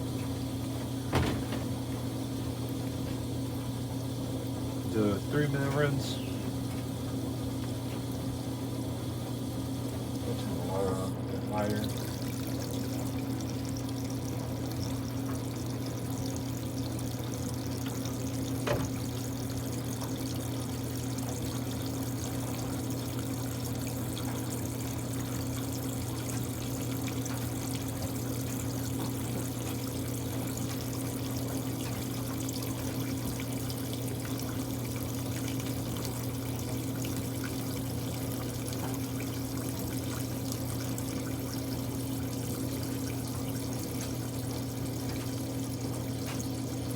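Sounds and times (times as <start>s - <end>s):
constant low hum: 0.0s - 24.8s
water running into a tub: 0.0s - 46.9s.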